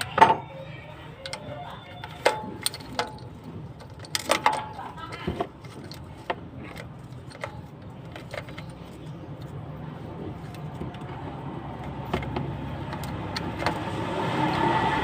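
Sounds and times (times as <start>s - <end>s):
small metallic clicks: 5.6s - 9.6s.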